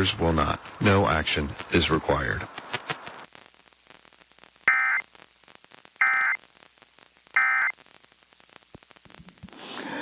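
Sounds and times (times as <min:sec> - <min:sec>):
digital modem chirping bursts: 0:04.7 - 0:05.0, 0:06.0 - 0:06.4.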